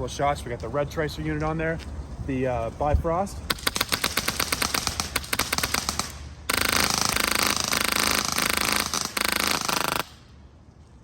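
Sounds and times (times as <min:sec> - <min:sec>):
airsoft rifle firing: 0:03.5 - 0:10.2.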